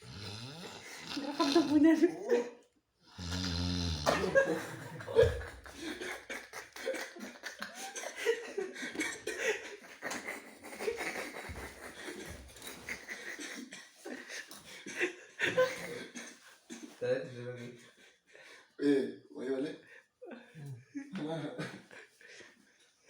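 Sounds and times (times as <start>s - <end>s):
man snoring: 0.0s - 1.8s, 3.1s - 4.4s
people giggling and laughing: 4.0s - 17.0s.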